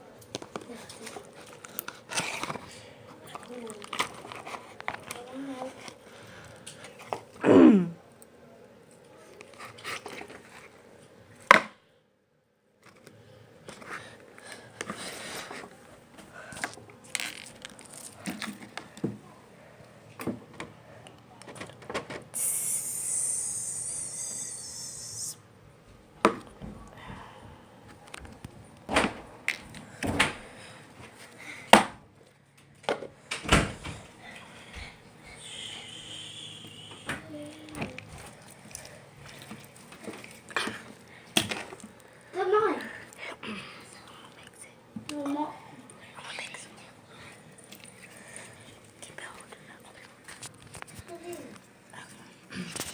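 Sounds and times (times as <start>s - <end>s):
brief hiss: 22.4s - 25.4s.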